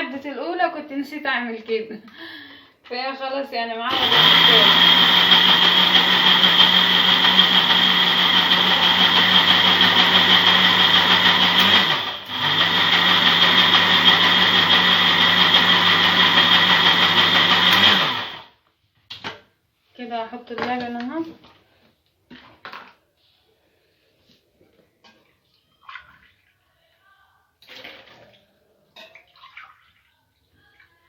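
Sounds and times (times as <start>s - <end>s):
electric mixer motor running: 3.9s - 18.5s.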